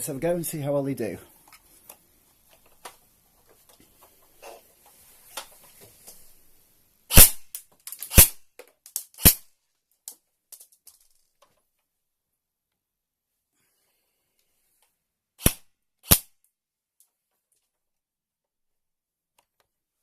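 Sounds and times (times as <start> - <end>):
airsoft rifle shots: 7.1 - 7.5, 8.1 - 8.4, 9.2 - 9.4, 15.4 - 16.3.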